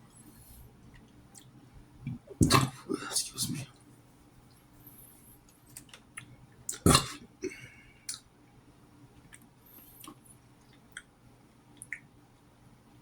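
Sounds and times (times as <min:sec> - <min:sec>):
small mouth noises: 0:06.1 - 0:08.2, 0:11.8 - 0:12.1
loud burp: 0:06.8 - 0:07.7.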